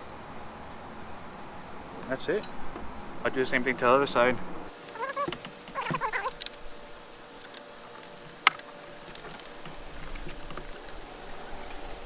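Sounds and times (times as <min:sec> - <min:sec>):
light clicks and taps: 0:04.8 - 0:06.7, 0:07.4 - 0:12.0.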